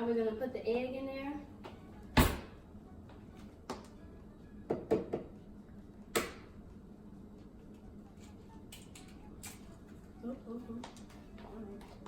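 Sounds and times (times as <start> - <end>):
egg tapping against a hard edge: 4.7 - 5.3.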